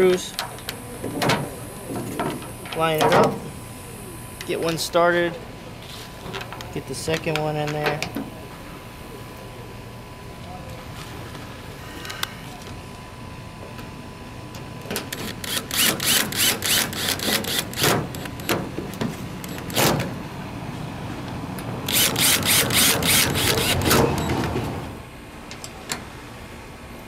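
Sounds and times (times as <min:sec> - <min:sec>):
power screwdriver driving screws: 0:15.1 - 0:17.9, 0:21.9 - 0:24.3.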